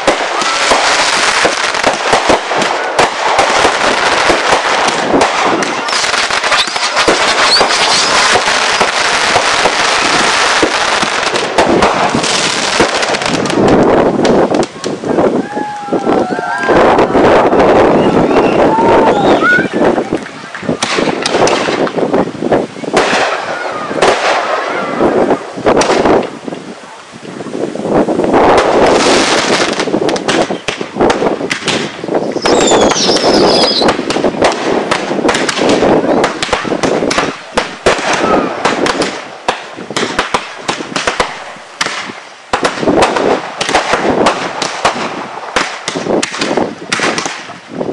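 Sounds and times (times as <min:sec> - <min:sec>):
fireworks bangs and crackling: 0:00.0 - 0:47.9
high firework whistle: 0:05.8 - 0:08.9, 0:15.4 - 0:19.9, 0:32.3 - 0:34.0.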